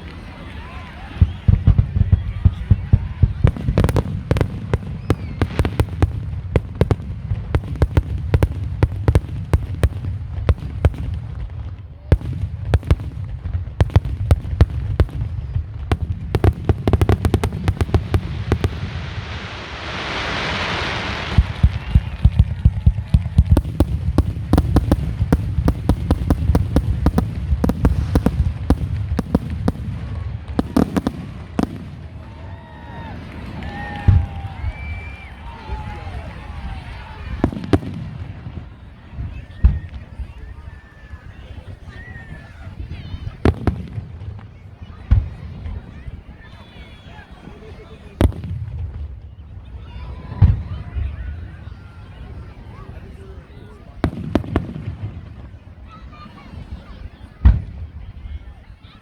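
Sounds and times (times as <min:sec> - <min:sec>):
hissing burst: 0:16.4 - 0:22.2.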